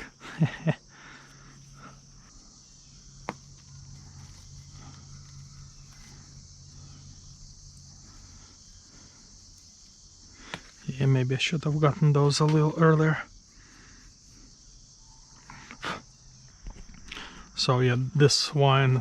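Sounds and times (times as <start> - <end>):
insects chirping chorus: 0.0 - 19.0
faint rustling: 3.1 - 11.0.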